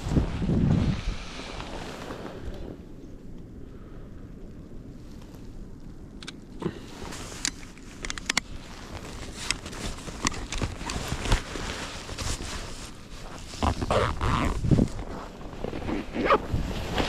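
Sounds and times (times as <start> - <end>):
wind rumble on microphone: 0.0 - 17.0
footsteps crunching in snow: 8.5 - 17.0.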